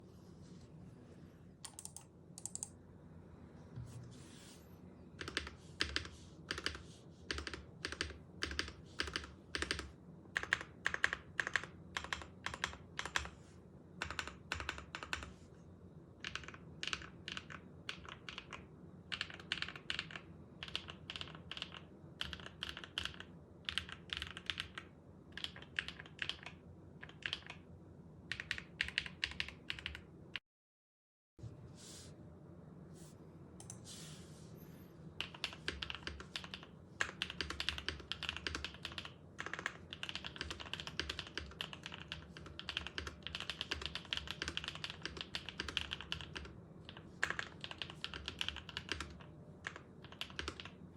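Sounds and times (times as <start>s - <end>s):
mechanical keyboard typing: 1.6s - 2.7s, 5.2s - 13.4s, 14.0s - 15.3s, 16.2s - 27.6s, 28.3s - 30.1s, 35.2s - 50.8s.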